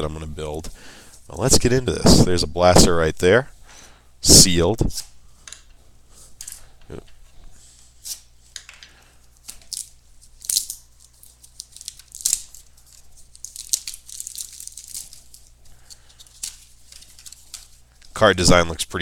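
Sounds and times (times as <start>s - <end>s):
plastic shrink-wrap crinkling: 8.5s - 18.3s.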